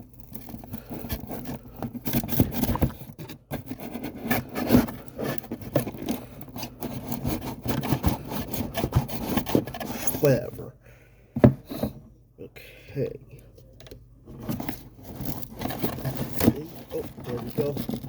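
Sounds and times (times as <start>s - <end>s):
packaging crinkling and scraping: 0.0s - 10.5s, 14.3s - 18.0s.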